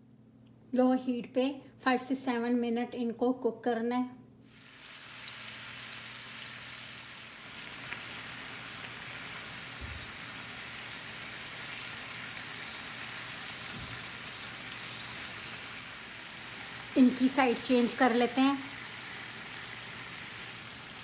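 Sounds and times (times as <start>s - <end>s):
meat sizzling in oil: 4.5s - 21.0s.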